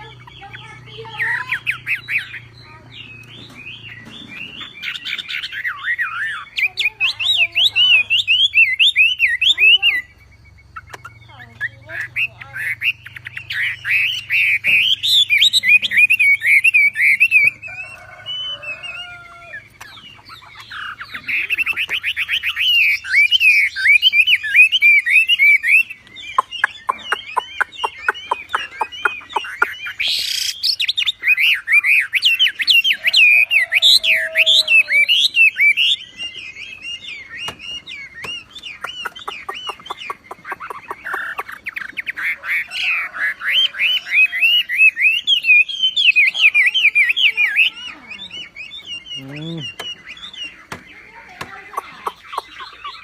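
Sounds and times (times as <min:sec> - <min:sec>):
songbird chattering song: 0:00.0 - 0:53.0.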